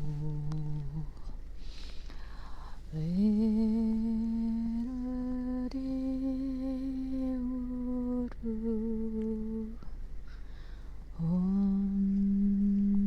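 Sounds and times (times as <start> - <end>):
person humming a long note: 0.0 - 1.2, 2.9 - 9.8, 11.2 - 13.0
in-breath: 1.1 - 2.9, 9.8 - 11.2.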